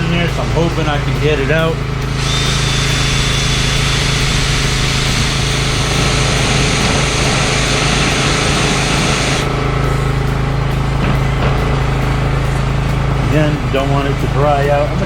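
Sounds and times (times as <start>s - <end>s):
power sander buzzing: 0.0s - 9.8s.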